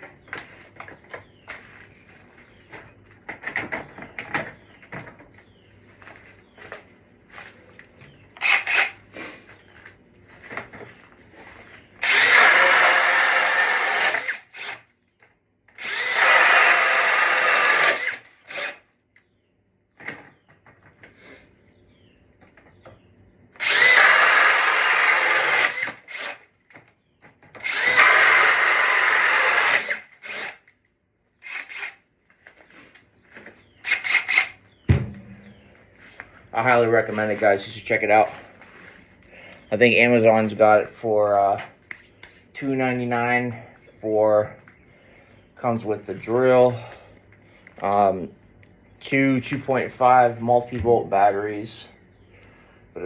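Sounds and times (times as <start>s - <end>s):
cordless hammer drill running: 12.0s - 14.9s, 15.8s - 18.8s, 23.6s - 26.4s, 27.6s - 30.6s, 31.4s - 32.0s, 33.8s - 34.6s.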